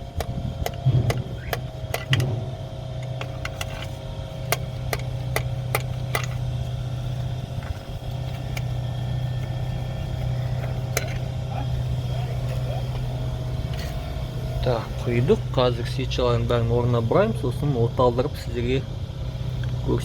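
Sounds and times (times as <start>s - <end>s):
low machine hum: 0.0s - 20.0s
sharp clicks of oil filler: 3.0s - 6.5s.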